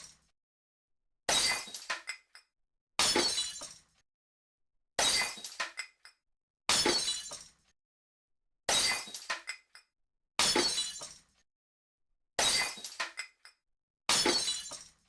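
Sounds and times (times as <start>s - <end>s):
glass smashing: 1.3s - 2.2s, 3.0s - 3.8s, 5.0s - 5.9s, 6.7s - 7.6s, 8.7s - 9.6s, 10.4s - 11.2s, 12.4s - 13.4s, 14.1s - 15.0s
glass pieces clinking: 1.3s - 2.4s, 3.1s - 3.8s, 5.0s - 6.2s, 6.8s - 7.6s, 8.7s - 9.8s, 10.5s - 11.2s, 12.4s - 13.6s, 14.2s - 15.0s.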